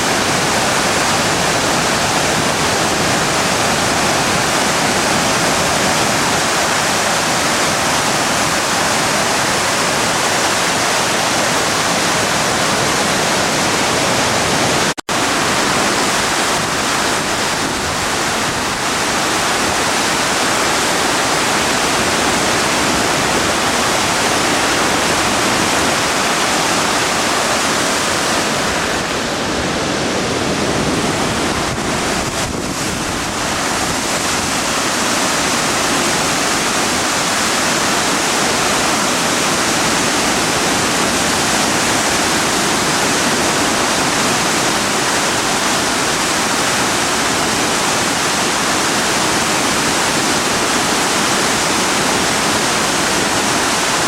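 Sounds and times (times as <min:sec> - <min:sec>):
flooded river rushing: 0:00.0 - 0:54.0.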